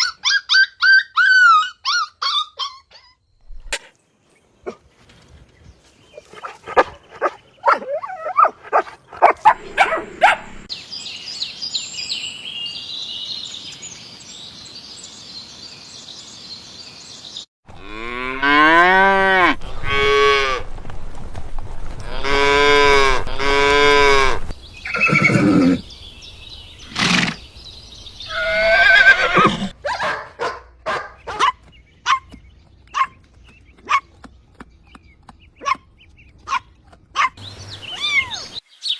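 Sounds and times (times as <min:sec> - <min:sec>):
puppy yipping and barking: 0:00.0 - 0:03.2, 0:06.8 - 0:10.5, 0:29.8 - 0:32.3, 0:36.5 - 0:37.4
long animal calls: 0:28.3 - 0:29.7.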